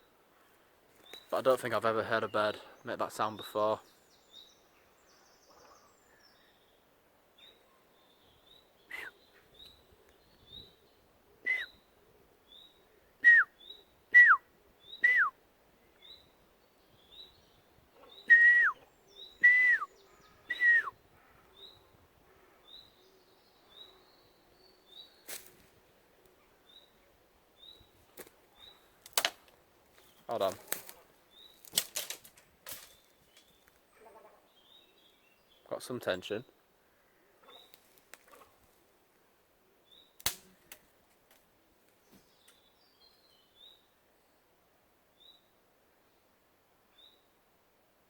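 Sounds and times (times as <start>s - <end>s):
bird whistling call: 11.4s - 11.9s, 13.2s - 15.4s, 18.0s - 21.0s.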